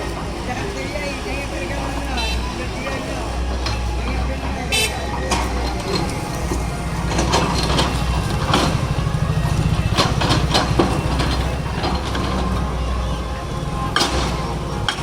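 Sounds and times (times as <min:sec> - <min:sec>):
machinery engine running: 0:00.0 - 0:15.0.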